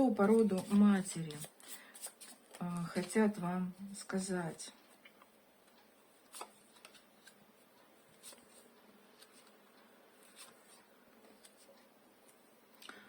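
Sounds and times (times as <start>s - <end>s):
cards rustling and clicking: 0.3s - 3.2s, 6.3s - 7.4s, 8.1s - 9.6s, 10.2s - 12.4s.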